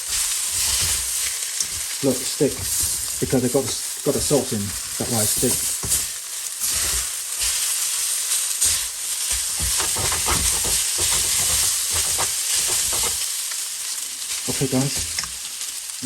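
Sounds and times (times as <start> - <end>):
utensil scraping a pan: 0.0 - 3.4, 8.6 - 13.3
noodles sizzling in a pan: 0.0 - 16.0.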